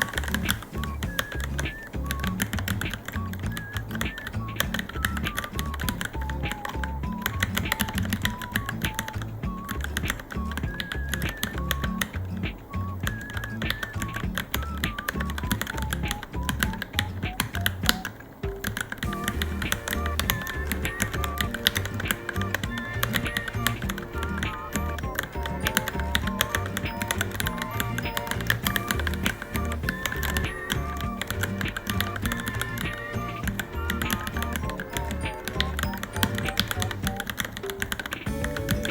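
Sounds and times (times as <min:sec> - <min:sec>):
background music: 0:00.0 - 0:38.9
mechanical keyboard typing: 0:13.1 - 0:38.9.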